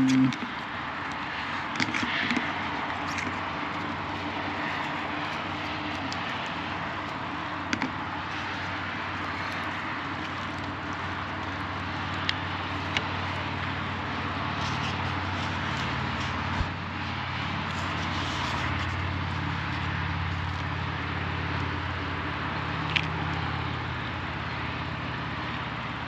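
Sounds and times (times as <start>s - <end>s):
low hum: 0.0s - 0.5s
road traffic noise: 0.0s - 26.0s.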